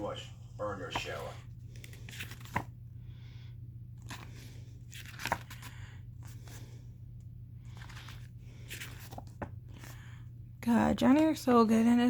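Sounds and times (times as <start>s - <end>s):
low electrical hum: 0.0s - 12.0s
paper pages rustling: 0.9s - 2.8s, 4.0s - 6.8s, 7.6s - 10.1s.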